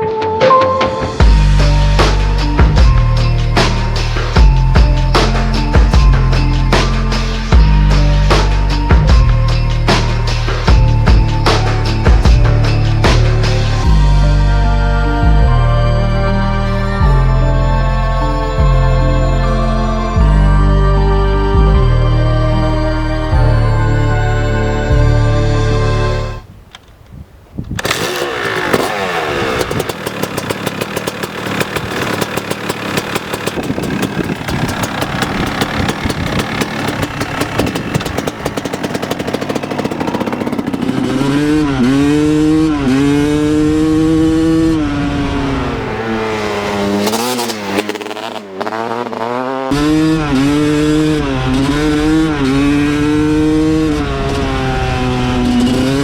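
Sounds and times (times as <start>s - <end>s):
motorcycle engine revving: 1.2s - 15.8s, 27.8s - 56.0s.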